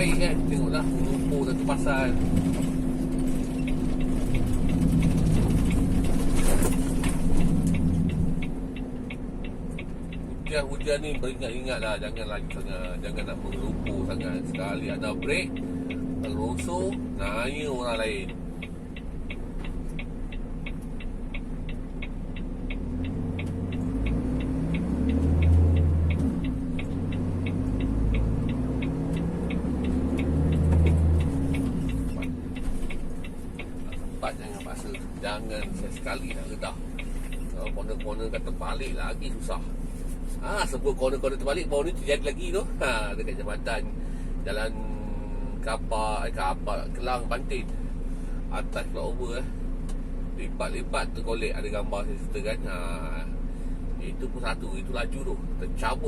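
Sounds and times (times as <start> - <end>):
lorry engine running: 0.0 - 56.0
quick even ticking: 7.0 - 39.8.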